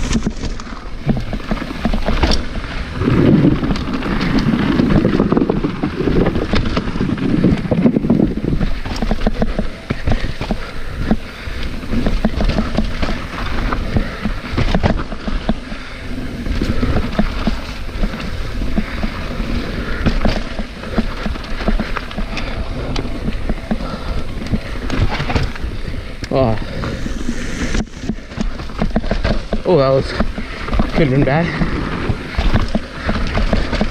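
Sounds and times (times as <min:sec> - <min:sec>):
bike chain and frame rattling: 0:00.0 - 0:33.9
bike knocking over bumps: 0:00.0 - 0:33.9
bike tyres rolling over dirt: 0:00.0 - 0:33.9.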